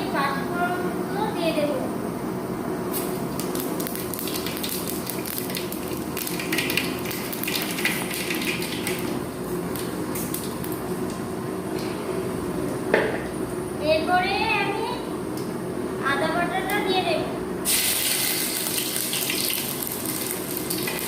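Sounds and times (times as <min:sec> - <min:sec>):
food sizzling in hot oil: 0:02.9 - 0:10.6, 0:17.6 - 0:21.0
oil crackling and popping: 0:02.9 - 0:10.8, 0:17.7 - 0:21.0.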